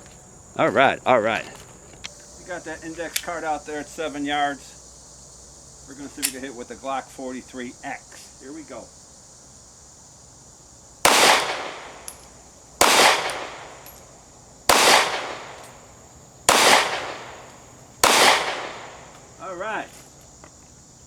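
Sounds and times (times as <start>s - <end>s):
pistol shots with echo: 11.0s - 19.3s.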